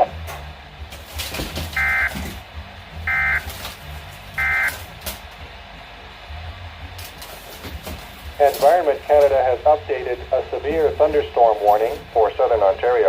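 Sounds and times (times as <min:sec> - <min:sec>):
low hum: 0:00.0 - 0:13.0
digital data tone bursts: 0:01.8 - 0:02.2, 0:03.1 - 0:03.5, 0:04.4 - 0:04.8
radio hiss: 0:08.2 - 0:13.0.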